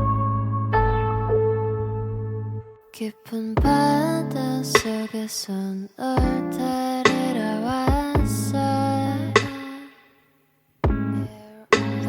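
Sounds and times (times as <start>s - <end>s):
synth chord over bass: 0.0s - 2.8s
person singing pop song: 2.9s - 10.0s, 10.9s - 12.0s.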